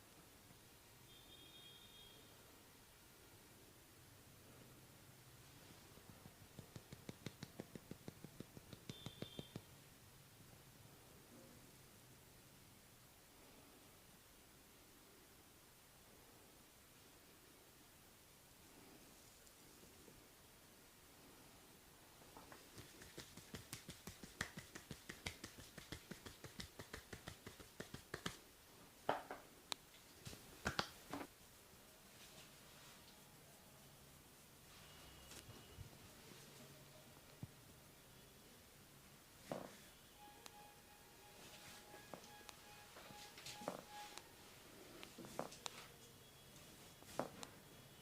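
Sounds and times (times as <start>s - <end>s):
percussive massage taps: 6.1s - 9.7s, 22.4s - 28.4s, 30.6s - 31.3s.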